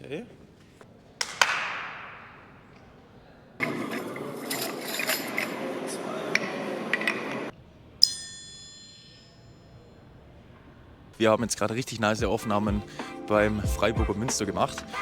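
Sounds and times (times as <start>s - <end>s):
sharp knock with echo: 1.2s - 2.7s
clattering rattling with clinks: 4.0s - 5.5s.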